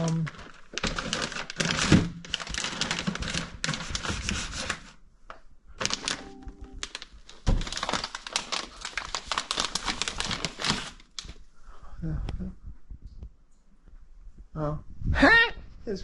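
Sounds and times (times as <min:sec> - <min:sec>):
clatter of clicks and crinkles: 0:00.0 - 0:11.4.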